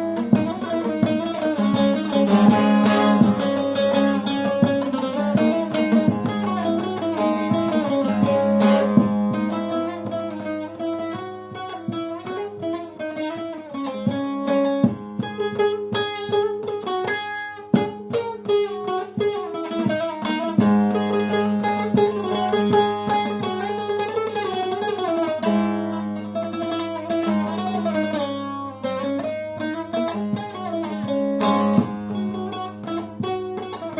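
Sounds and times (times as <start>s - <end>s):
long-necked lute plucked: 0.0s - 33.9s.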